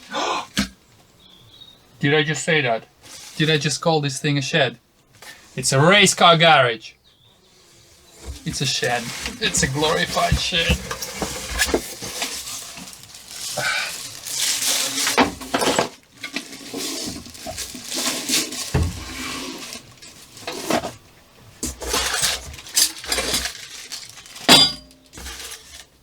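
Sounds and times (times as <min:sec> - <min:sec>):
packaging rustling and scraping: 0:03.0 - 0:03.7, 0:05.2 - 0:05.8, 0:07.4 - 0:26.0
metal parts clinking: 0:21.6 - 0:25.8.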